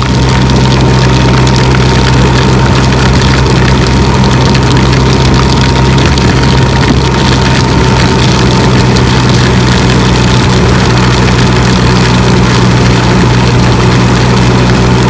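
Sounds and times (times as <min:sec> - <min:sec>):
motorcycle engine running: 0:00.0 - 0:15.0
wind and road noise: 0:00.0 - 0:15.0.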